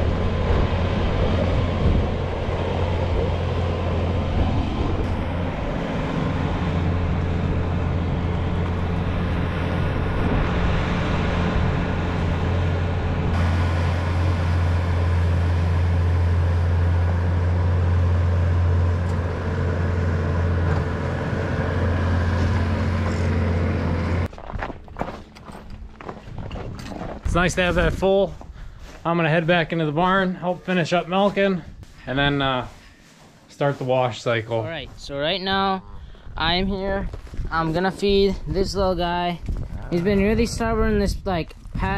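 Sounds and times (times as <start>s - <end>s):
farm machine engine running: 0.0s - 24.3s.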